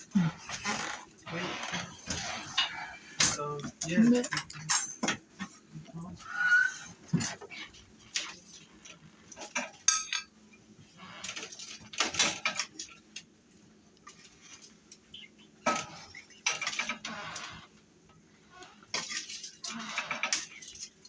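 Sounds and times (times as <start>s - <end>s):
utensils clattering on dishes: 0.1s - 5.6s, 6.8s - 8.6s, 9.3s - 10.4s, 11.2s - 13.2s, 15.6s - 17.6s, 18.8s - 21.0s.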